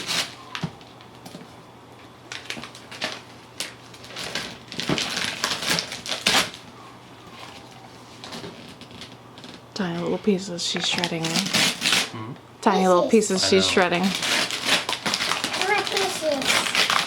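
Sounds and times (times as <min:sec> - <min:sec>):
wrapping paper tearing: 0:00.0 - 0:00.4, 0:02.3 - 0:06.7, 0:11.0 - 0:12.1, 0:13.5 - 0:17.0.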